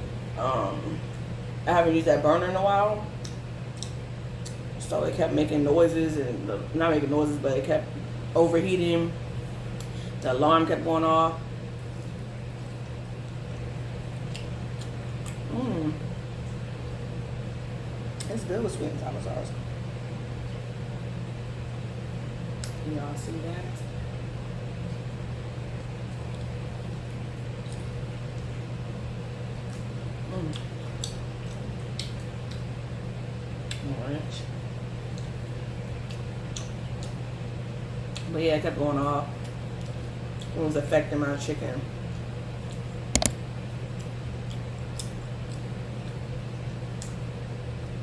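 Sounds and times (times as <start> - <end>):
low mechanical hum: 0.0 - 48.0
wet mouth clicks from chewing: 3.2 - 4.6, 14.2 - 15.5, 30.5 - 32.7, 42.7 - 43.4, 44.0 - 45.6
mouth smacking while chewing: 13.5 - 15.5, 29.6 - 32.7.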